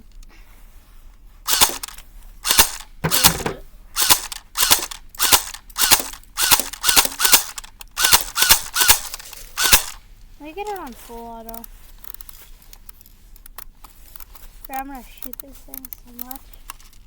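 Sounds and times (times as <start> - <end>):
airsoft gun shots: 1.5 - 10.0.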